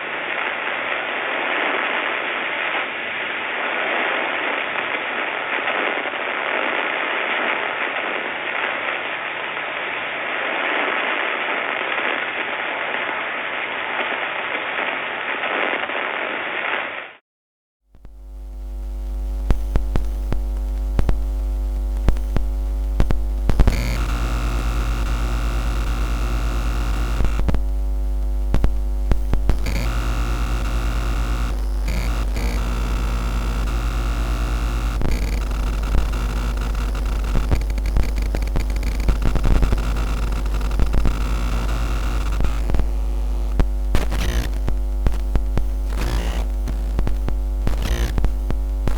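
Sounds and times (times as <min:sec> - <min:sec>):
electrical clicks and crackles: 0:18.0 - 0:48.9
loud electrical hum with tones: 0:18.0 - 0:48.9
static hiss: 0:18.0 - 0:48.9.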